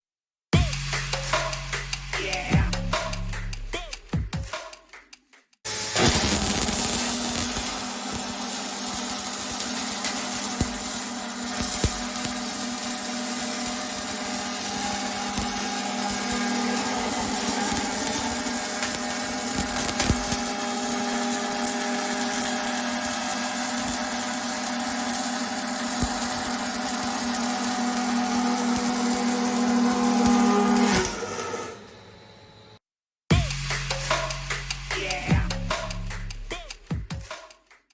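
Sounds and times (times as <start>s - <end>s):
welding arc hissing: 5.7s - 31.2s.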